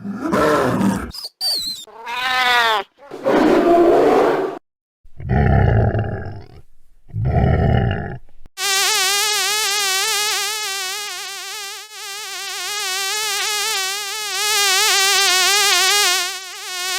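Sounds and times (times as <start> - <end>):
housefly buzzing: 8.6 - 16.9.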